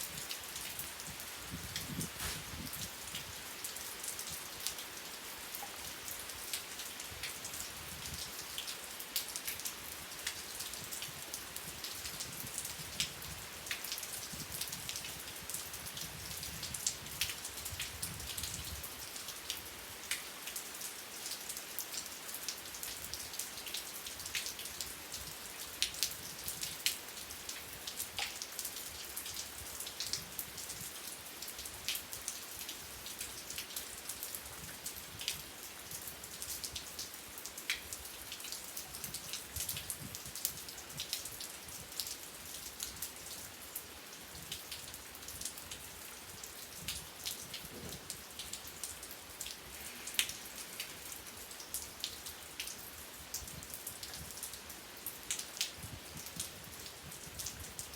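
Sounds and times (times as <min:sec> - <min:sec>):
raindrops striking a surface: 0:00.0 - 0:57.9
steady rain hiss: 0:00.0 - 0:57.9.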